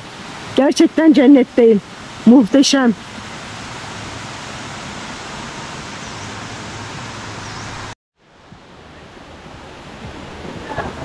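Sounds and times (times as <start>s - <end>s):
waterfall rushing: 0.0s - 11.0s
faint bird chirps: 7.4s - 7.9s.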